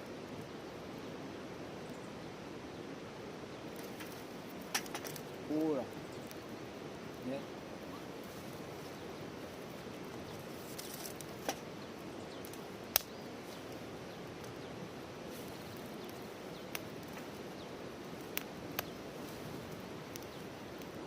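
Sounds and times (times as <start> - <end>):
campfire hissing: 0.0 - 21.0
firewood crackling pops: 3.5 - 7.2, 8.9 - 21.0.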